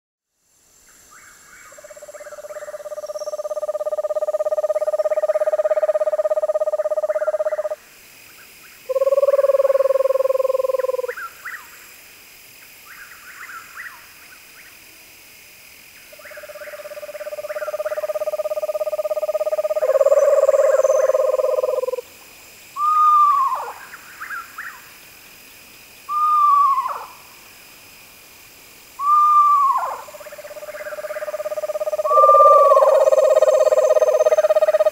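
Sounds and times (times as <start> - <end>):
owl whinnies falling in pitch: 29.0 - 30.0, 32.0 - 34.8
owl trilling: 30.8 - 34.9.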